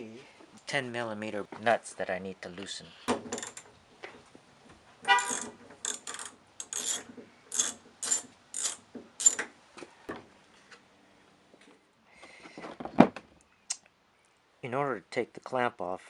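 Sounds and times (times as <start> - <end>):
ratchet wrench clicking: 5.2 - 9.4.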